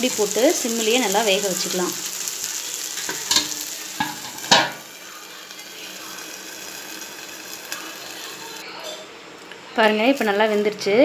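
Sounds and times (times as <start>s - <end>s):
batter sizzling in a pan: 0.0s - 11.0s
lid clinking on a pan: 3.1s - 4.8s.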